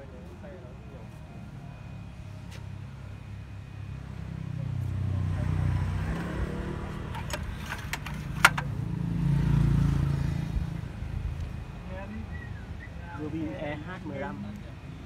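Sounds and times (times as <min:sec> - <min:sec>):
engine humming: 0:00.0 - 0:15.0
sharp clicks or knocks: 0:07.1 - 0:08.8.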